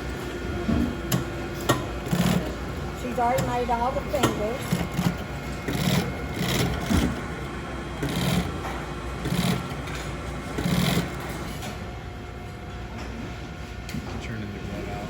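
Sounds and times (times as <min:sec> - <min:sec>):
low factory hum: 0:00.0 - 0:15.0
sewing machine stitching: 0:02.0 - 0:02.5, 0:04.2 - 0:07.2, 0:08.0 - 0:10.0, 0:10.6 - 0:11.4.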